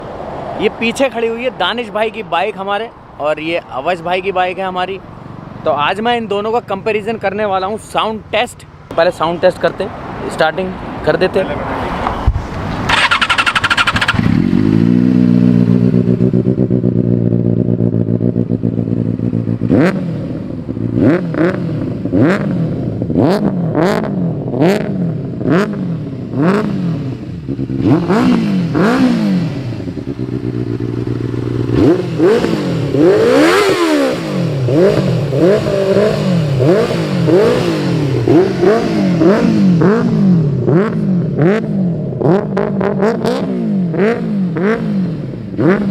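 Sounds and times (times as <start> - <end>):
motorcycle engine revving: 12.8 - 45.9.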